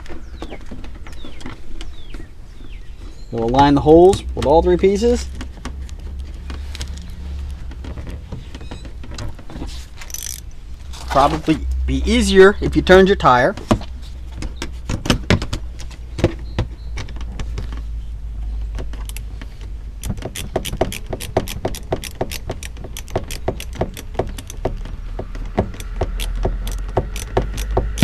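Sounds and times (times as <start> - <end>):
hand ratchet clicking: 10.1 - 10.4, 20.0 - 24.6, 25.7 - 28.0.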